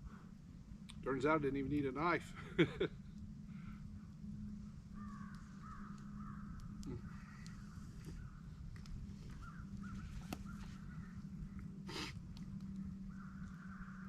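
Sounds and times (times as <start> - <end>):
steady low hum: 0.0 - 14.0
crow-like bird calls: 4.9 - 8.4, 9.3 - 14.0
faint clicks: 5.0 - 10.6, 11.5 - 14.0.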